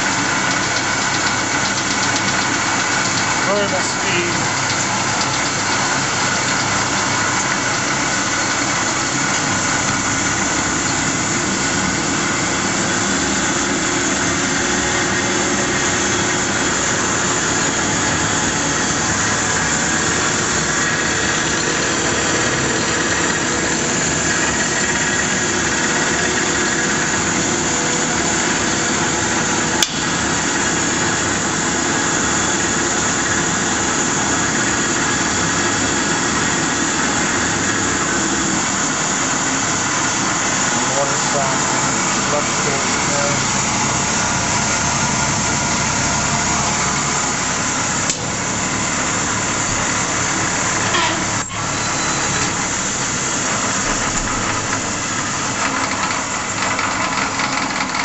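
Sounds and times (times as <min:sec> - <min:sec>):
lathe whirring with squeal: 0:00.0 - 0:58.0
sharp click: 0:29.8 - 0:30.1.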